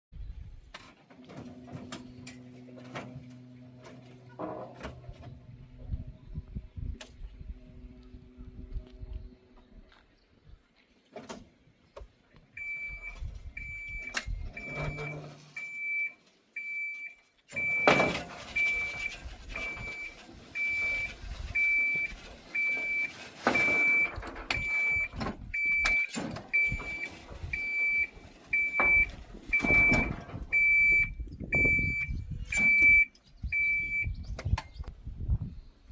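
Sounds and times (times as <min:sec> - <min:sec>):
cart body rattling and clunking: 0:00.8 - 0:05.5, 0:17.5 - 0:33.1
high single-tone warning beeps: 0:12.6 - 0:34.1.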